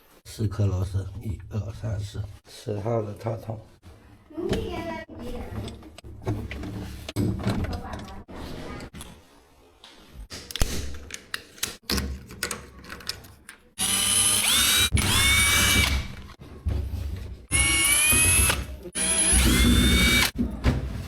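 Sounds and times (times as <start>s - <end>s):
handling clicks and knocks: 10.3s - 13.8s
electric drill whining: 13.8s - 16.2s, 17.5s - 20.4s.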